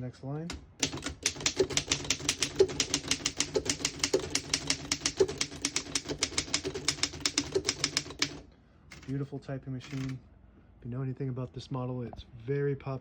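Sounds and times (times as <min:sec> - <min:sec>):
manual typewriter typing: 0:00.5 - 0:09.2, 0:09.8 - 0:10.2.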